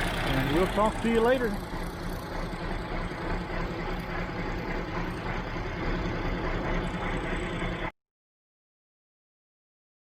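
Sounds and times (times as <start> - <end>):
tractor diesel engine running: 0.0 - 7.9.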